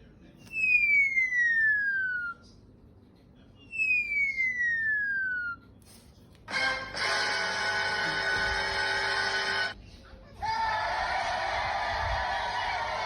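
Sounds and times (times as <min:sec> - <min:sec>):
falling whistle tone: 0:00.5 - 0:02.4, 0:03.7 - 0:05.6.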